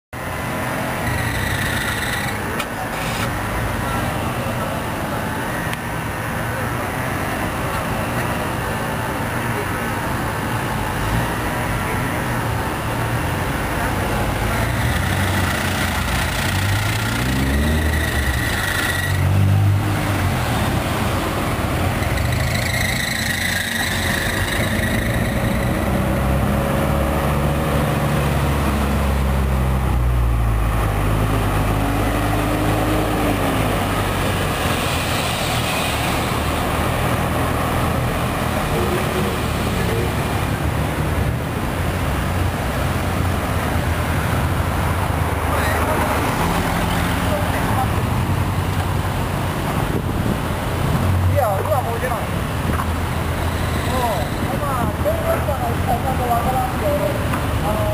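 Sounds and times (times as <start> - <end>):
fan belt squealing: 0.9 - 2.6, 14.6 - 19.4, 21.9 - 26.2, 53.4 - 54.7
car engine revving: 12.5 - 41.4.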